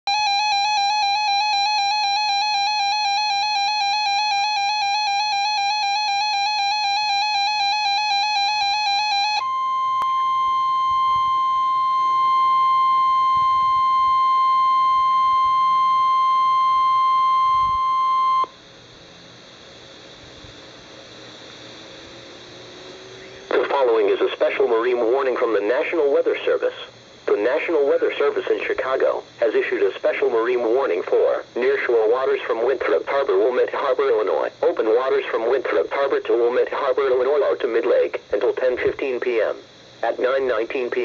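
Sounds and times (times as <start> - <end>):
steady high alarm tone: 0.0 - 18.7
faint radio hiss: 18.5 - 41.0.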